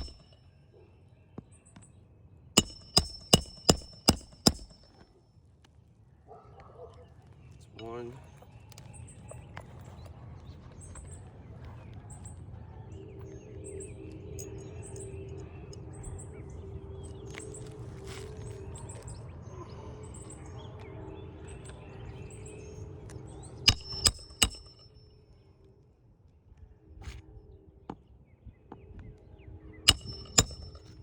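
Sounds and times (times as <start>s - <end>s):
hammer striking metal: 0.0s - 0.4s, 2.6s - 5.0s, 23.7s - 25.0s, 29.9s - 31.0s
steady low hum: 0.0s - 1.3s
bird chirping: 0.0s - 5.1s, 6.3s - 25.4s.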